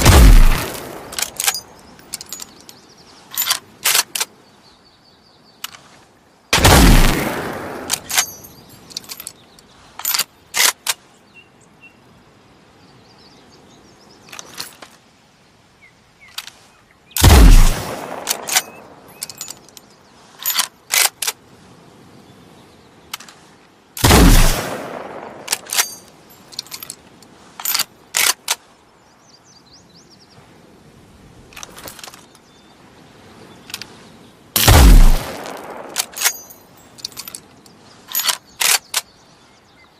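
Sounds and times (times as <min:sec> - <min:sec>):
rifle shots with echo: 0:00.0 - 0:01.3, 0:06.6 - 0:08.1, 0:17.2 - 0:18.9, 0:24.0 - 0:26.0, 0:34.6 - 0:36.4
metallic rifle bolt clicks: 0:00.4 - 0:04.3, 0:07.9 - 0:09.4, 0:17.9 - 0:21.4, 0:25.4 - 0:27.0, 0:27.6 - 0:28.6, 0:34.6 - 0:39.1.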